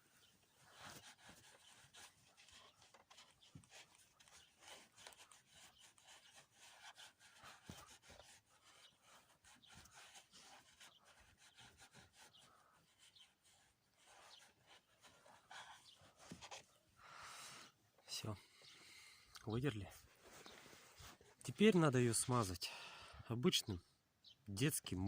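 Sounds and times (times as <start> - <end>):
rag rubbing on metal: 0.6 - 16.4.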